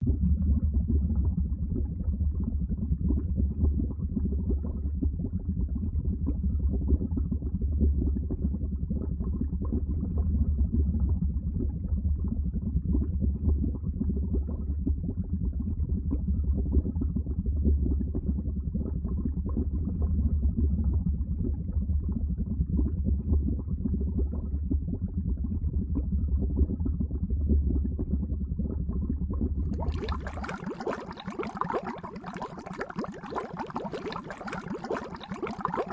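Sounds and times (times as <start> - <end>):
water bubbling: 29.6 - 35.9.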